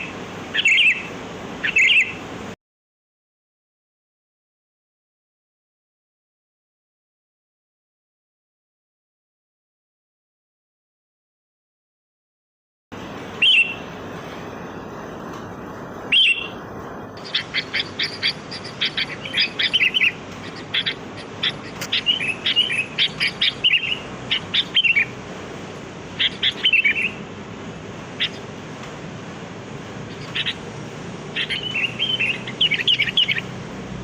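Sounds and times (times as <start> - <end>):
birds calling and chirping: 0.0 - 2.5, 13.0 - 34.0.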